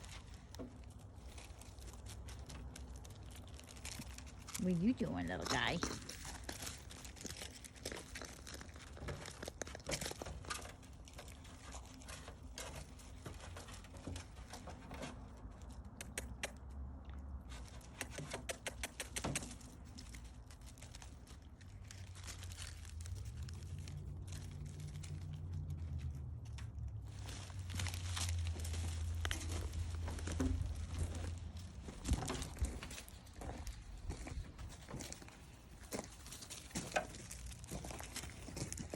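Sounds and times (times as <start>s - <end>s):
low rumble: 20.6s - 35.4s
crunching in snow: 27.1s - 38.9s.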